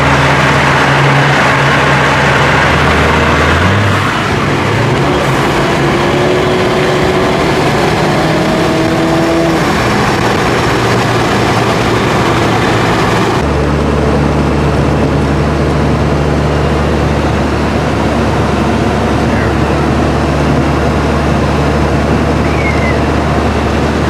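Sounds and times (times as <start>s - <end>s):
car engine: 0.0s - 24.0s
road and wind noise: 0.0s - 24.0s
steady low drone: 0.0s - 24.0s.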